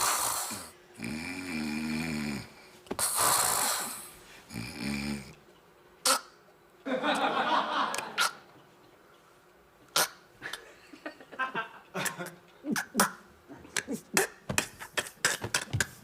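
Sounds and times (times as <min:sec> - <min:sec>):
person snoring: 0:00.0 - 0:05.4.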